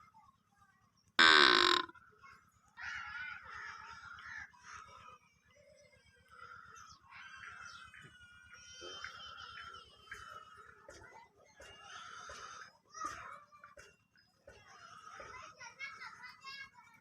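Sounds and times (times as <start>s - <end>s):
harsh animal call: 1.2s - 1.9s
soft animal calls: 1.2s - 1.9s.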